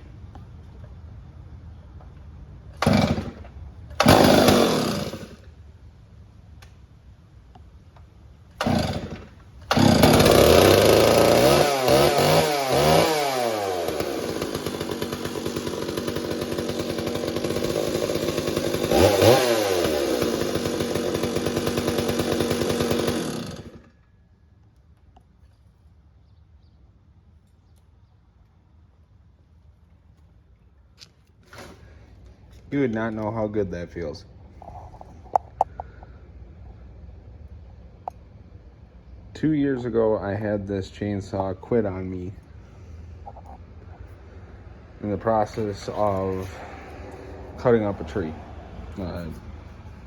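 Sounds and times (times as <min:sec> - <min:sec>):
chainsaw starting and revving: 0:02.8 - 0:05.5, 0:08.6 - 0:24.0, 0:45.0 - 0:50.0.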